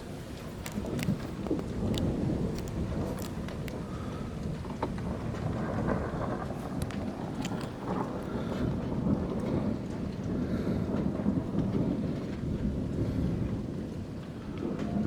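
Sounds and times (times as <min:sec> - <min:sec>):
thunder rumbling: 0:00.0 - 0:15.0
faint clicks: 0:00.4 - 0:03.8, 0:06.7 - 0:08.1.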